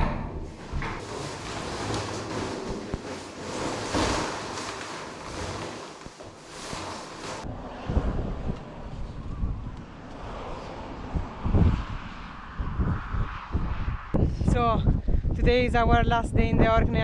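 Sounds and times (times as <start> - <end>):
gusty wind on microphone: 0.0 - 17.0.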